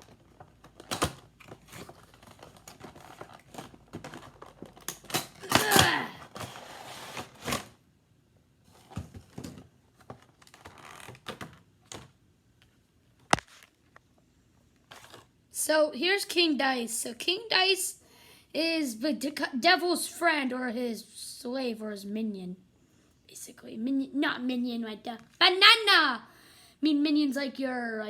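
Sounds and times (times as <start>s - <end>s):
cardboard packaging rustling: 0.0s - 7.8s, 8.6s - 12.1s, 14.9s - 15.3s
packaging scraping: 0.0s - 7.8s, 8.7s - 11.6s.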